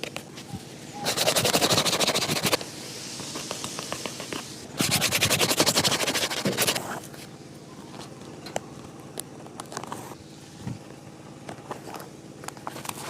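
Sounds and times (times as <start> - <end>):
shoe brush scrubbing leather: 1.0 - 2.6, 3.2 - 7.0.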